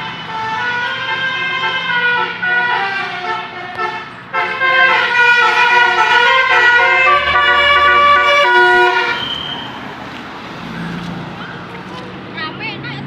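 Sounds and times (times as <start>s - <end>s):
multi-tone horns playing a tune: 0.0s - 9.8s.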